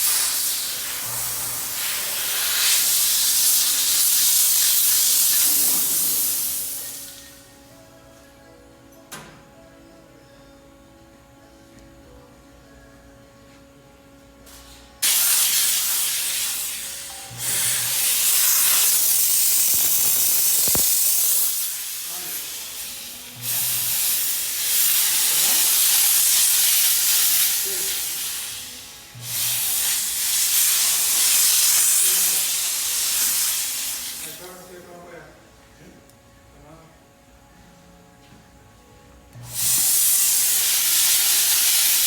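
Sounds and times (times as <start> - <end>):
steam cleaner hissing: 0.0 - 7.4, 15.0 - 34.7, 39.4 - 42.0.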